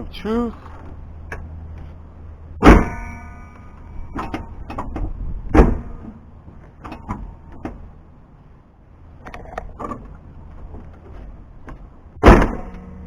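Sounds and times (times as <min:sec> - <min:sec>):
truck hood slamming shut: 0:12.2 - 0:12.7.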